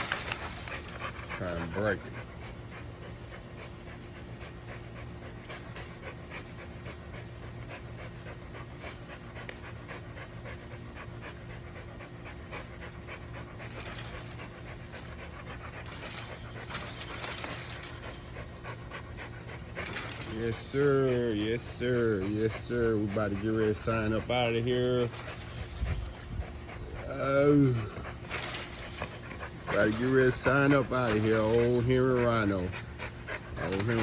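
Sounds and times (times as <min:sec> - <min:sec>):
dog panting: 0:00.0 - 0:34.0.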